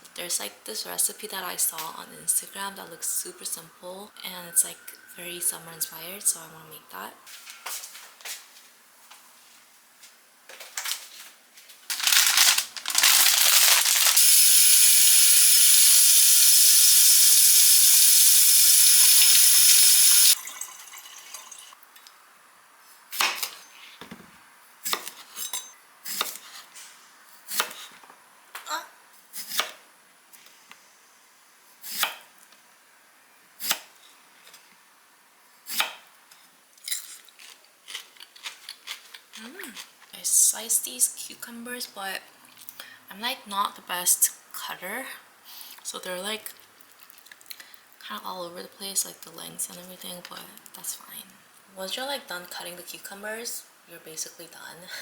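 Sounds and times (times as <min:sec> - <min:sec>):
kitchen tap running: 0:12.2 - 0:21.7.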